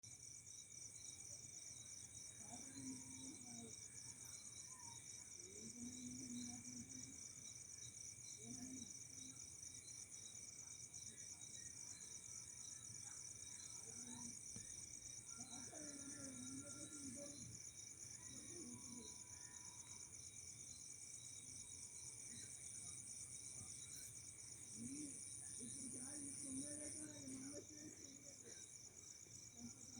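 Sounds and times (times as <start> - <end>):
crickets trilling: 0.1 - 29.9.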